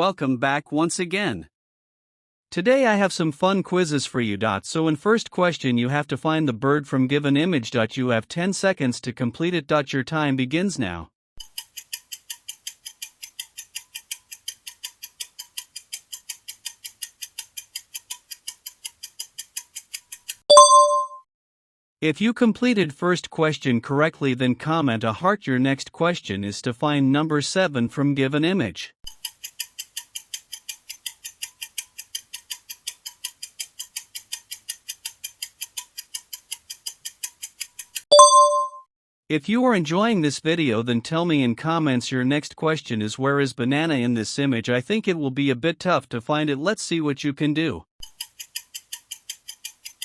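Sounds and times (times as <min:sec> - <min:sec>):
timer ticking: 0:11.4 - 0:21.2, 0:29.1 - 0:38.8, 0:48.0 - 0:50.0.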